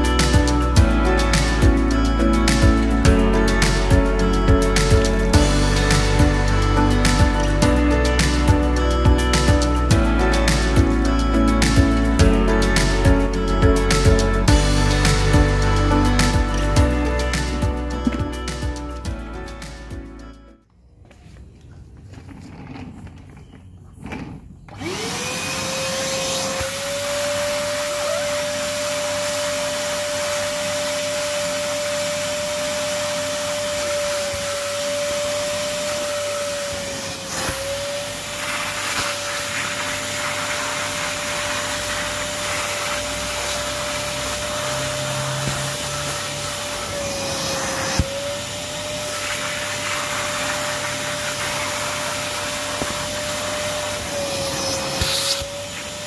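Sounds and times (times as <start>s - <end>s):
vacuum cleaner motor whine: 24.0s - 56.0s.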